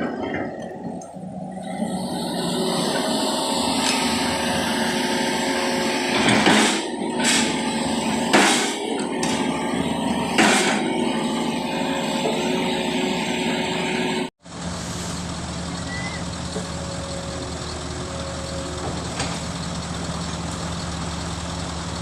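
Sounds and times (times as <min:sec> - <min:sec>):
road-work machinery running: 0:00.0 - 0:22.0
loud clanking hits: 0:06.1 - 0:11.0.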